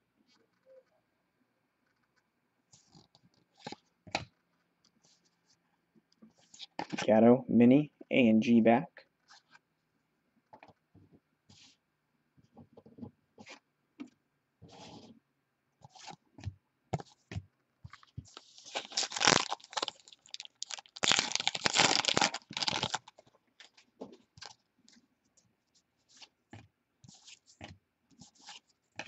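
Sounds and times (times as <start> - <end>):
packaging crinkling and rustling: 17.9 - 24.6.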